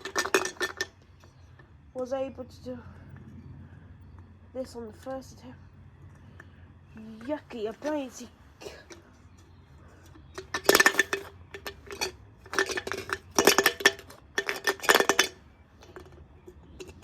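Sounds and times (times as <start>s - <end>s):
washing machine rattling and clattering: 0.0s - 1.0s.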